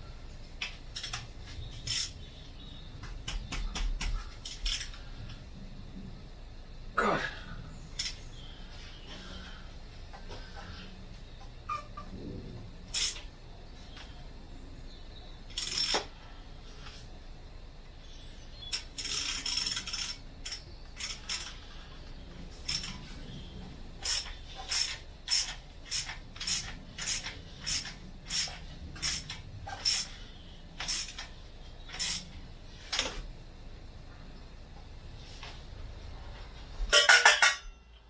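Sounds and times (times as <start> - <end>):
socket ratchet clicking: 15.5 - 16.1, 18.7 - 21.6, 24.0 - 30.1, 30.8 - 32.3
metallic tool clatter: 36.9 - 37.7.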